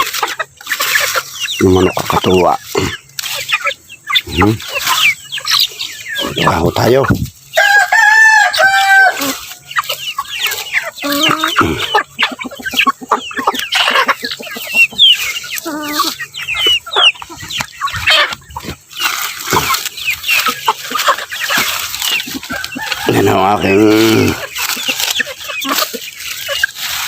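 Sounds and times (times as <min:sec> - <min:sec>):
chickens clucking: 0:00.0 - 0:27.0
rooster crowing: 0:07.5 - 0:09.6, 0:22.3 - 0:24.4.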